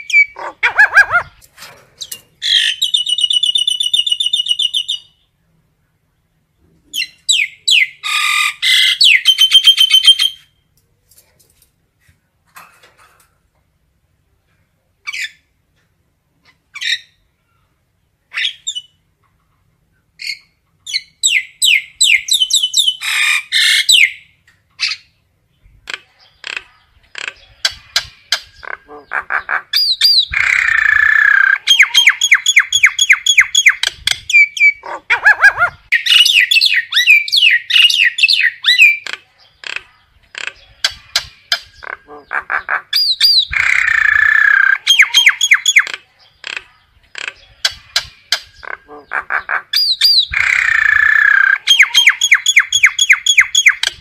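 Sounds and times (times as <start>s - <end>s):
myna flock calling: 0.0s - 1.4s, 25.8s - 54.0s.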